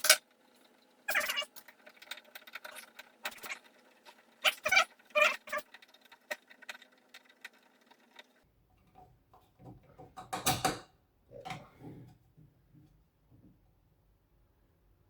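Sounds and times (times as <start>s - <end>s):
knocking and scraping handling: 8.7s - 13.6s.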